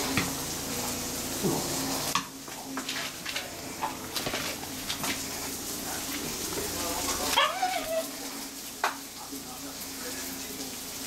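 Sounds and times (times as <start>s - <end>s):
dog whining: 7.3s - 8.2s.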